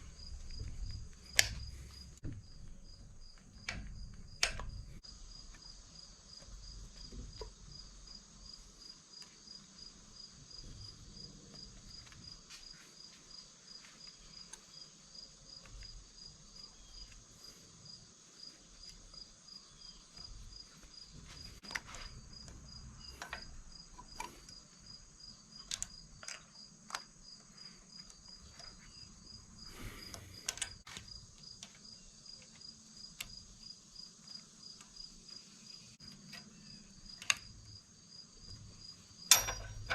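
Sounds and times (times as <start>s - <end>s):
hand tools clicking and tapping: 0.0s - 5.6s, 20.1s - 35.4s, 36.0s - 37.7s, 39.2s - 39.9s
cricket chirping: 0.0s - 39.9s.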